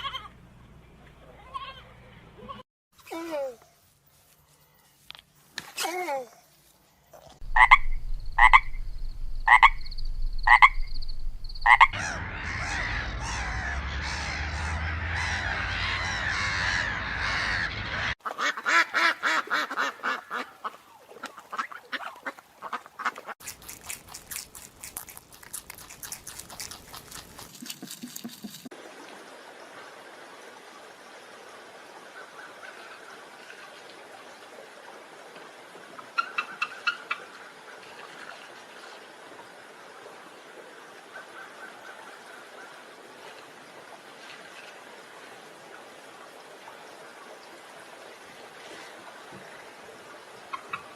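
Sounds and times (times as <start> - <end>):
rapid pulsed frog calls: 7.4 - 17.7, 50.5 - 50.9
frog chorus: 7.4 - 20.5
frogs croaking: 7.4 - 20.5, 50.2 - 50.9.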